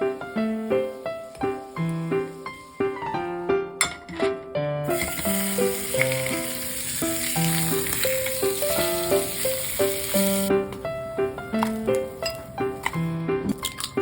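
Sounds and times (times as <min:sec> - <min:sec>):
piano music: 0:00.0 - 0:14.0
food sizzling in frying pan: 0:04.8 - 0:10.5.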